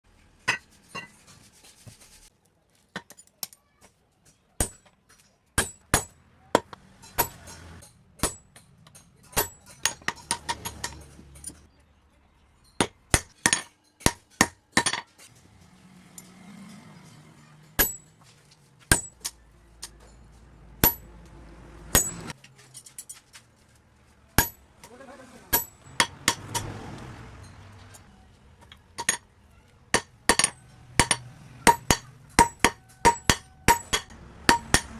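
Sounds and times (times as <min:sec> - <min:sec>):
hammer striking steel on anvil: 0:05.6 - 0:11.6, 0:12.8 - 0:15.1, 0:17.8 - 0:18.1, 0:18.9 - 0:21.1, 0:21.9 - 0:22.4, 0:24.4 - 0:26.8, 0:28.6 - 0:29.2, 0:29.9 - 0:34.9.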